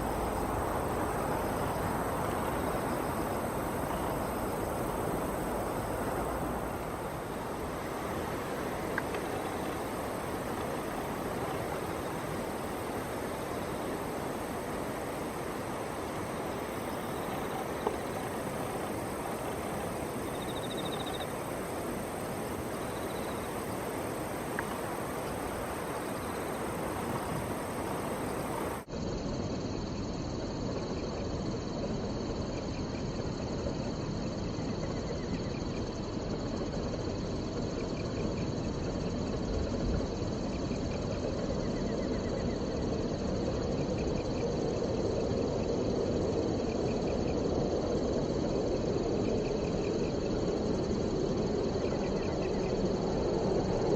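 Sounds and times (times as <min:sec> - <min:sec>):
steady rushing noise: 0:00.0 - 0:28.9
insects trilling: 0:00.0 - 0:53.9.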